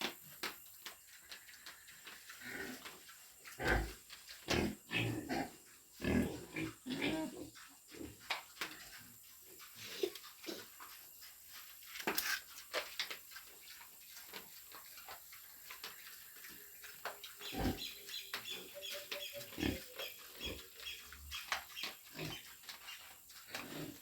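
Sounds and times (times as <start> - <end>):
piglets grunting and squealing: 3.6 - 8.2, 17.4 - 21.4.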